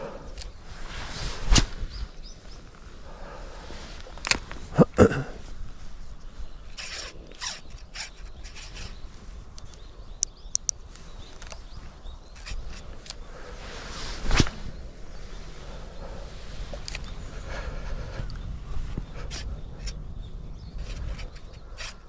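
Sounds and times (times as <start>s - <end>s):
fishing reel squealing and clicking: 6.8s - 9.0s.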